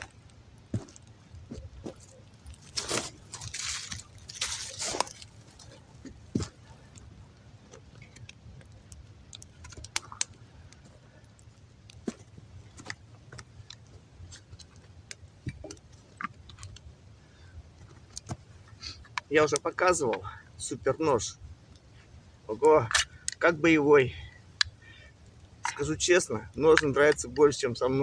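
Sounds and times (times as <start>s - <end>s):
soft rustles: 0.0s - 8.3s
small clicks and pops: 3.7s - 20.2s.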